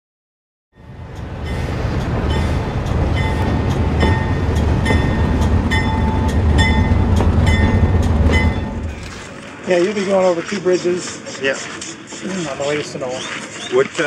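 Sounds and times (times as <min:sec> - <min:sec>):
railway car rumbling: 0:00.8 - 0:10.2
metallic clacks of rail joints: 0:00.8 - 0:14.0
wheel squeals and rings: 0:10.7 - 0:14.0.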